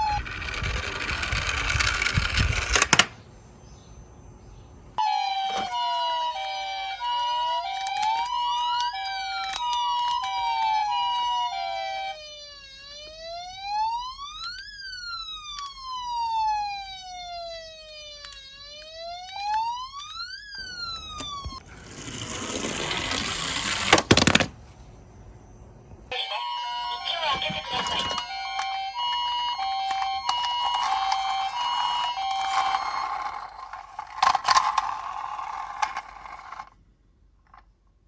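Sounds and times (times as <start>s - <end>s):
two-tone toy siren: 0.0s - 3.0s, 5.0s - 21.7s, 26.1s - 36.7s
rising and falling siren wail: 5.0s - 21.6s, 26.2s - 36.7s
rattling roll: 29.7s - 36.7s.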